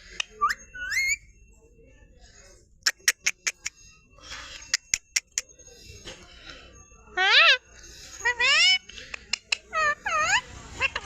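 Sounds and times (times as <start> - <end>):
parrot squawk: 0.8 - 1.2, 7.2 - 7.6, 8.2 - 8.8, 9.7 - 11.0.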